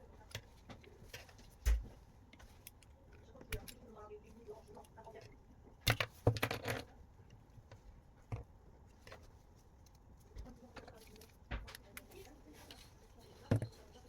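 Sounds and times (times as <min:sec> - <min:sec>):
tools being handled: 0:07.6 - 0:14.0.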